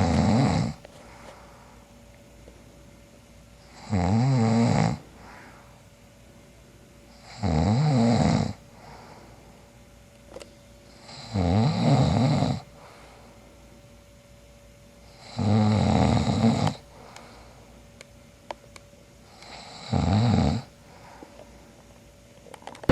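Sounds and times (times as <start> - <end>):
man snoring: 0.0 - 0.8, 3.7 - 5.0, 7.2 - 8.6, 11.0 - 12.7, 15.1 - 16.8, 19.4 - 20.7.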